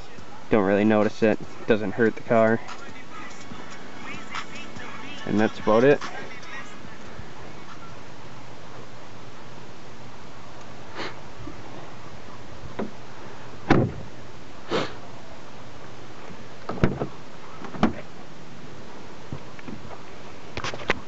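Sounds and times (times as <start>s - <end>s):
thump: 13.7s - 14.1s.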